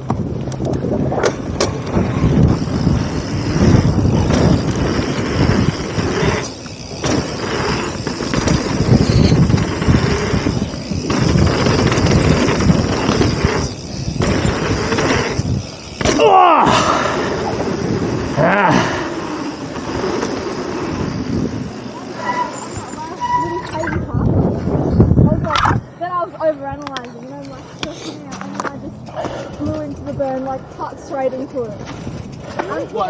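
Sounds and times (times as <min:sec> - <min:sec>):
knobby tyres rumbling on dirt: 0:00.0 - 0:33.0
wind buffeting microphone: 0:00.0 - 0:33.0.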